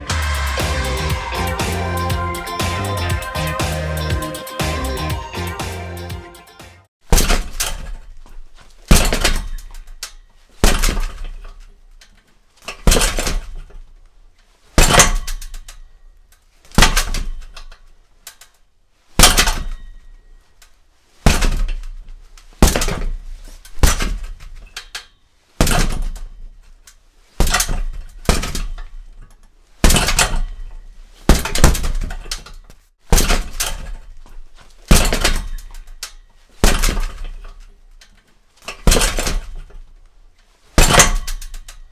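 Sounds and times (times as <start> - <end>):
punches thudding on heavy bag: 7.0 - 8.2, 8.8 - 10.0, 10.6 - 11.5, 12.7 - 13.8, 14.8 - 15.6, 16.7 - 17.7, 19.2 - 20.0, 21.2 - 24.7, 25.6 - 26.5, 27.4 - 29.1, 29.8 - 36.0, 36.6 - 37.7, 38.7 - 39.9, 40.8 - 41.9.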